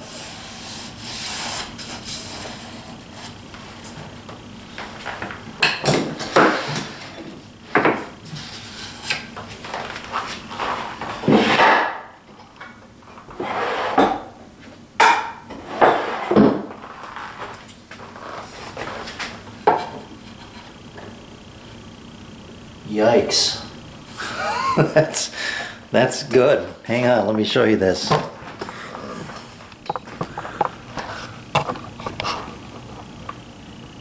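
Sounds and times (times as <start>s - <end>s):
wooden boards and tools clattering: 29.8s - 32.4s.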